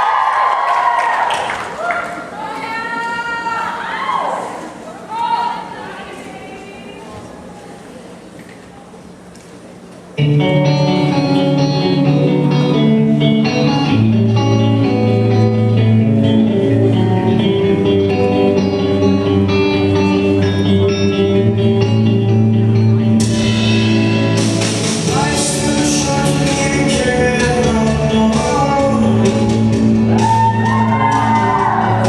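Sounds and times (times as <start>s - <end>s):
rock band music with guitar: 10.2s - 32.0s.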